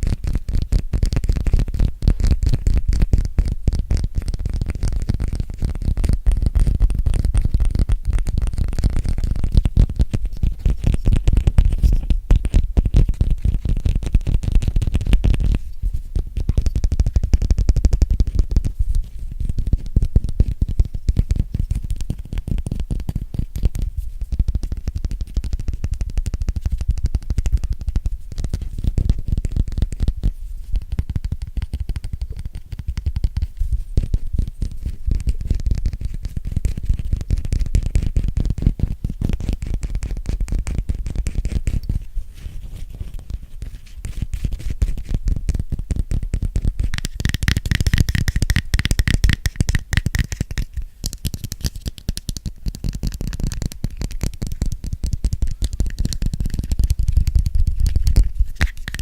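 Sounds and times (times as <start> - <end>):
fingernail tapping on object: 44.1 - 59.0.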